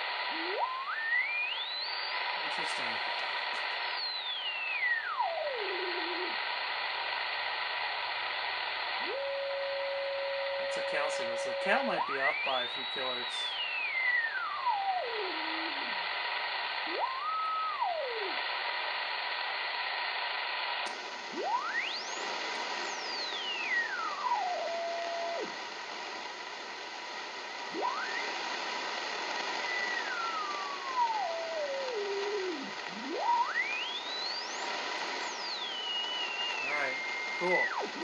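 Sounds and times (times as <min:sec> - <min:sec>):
receiver hiss: 0:00.0 - 0:38.0
radio whistling beat note: 0:00.3 - 0:06.4, 0:09.0 - 0:16.0, 0:16.8 - 0:18.4, 0:21.3 - 0:25.5, 0:27.7 - 0:38.0.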